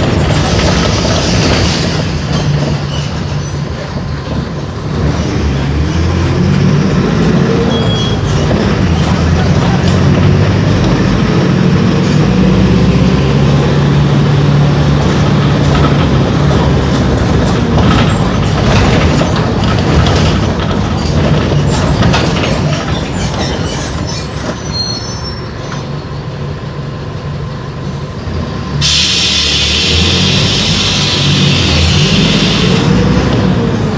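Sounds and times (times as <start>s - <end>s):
bus engine drone: 0.0s - 33.9s
constant rattle: 15.5s - 24.6s
high-pitched squeaks: 22.9s - 25.9s.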